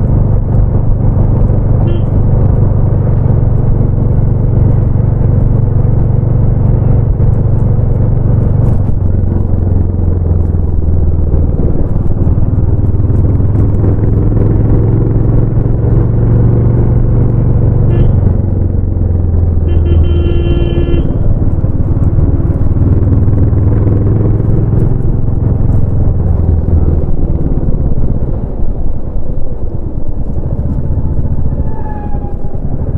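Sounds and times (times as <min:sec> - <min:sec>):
motorcycle engine running: 0:00.0 - 0:32.9
horn sounding: 0:01.8 - 0:02.2, 0:17.9 - 0:18.2, 0:19.6 - 0:21.2.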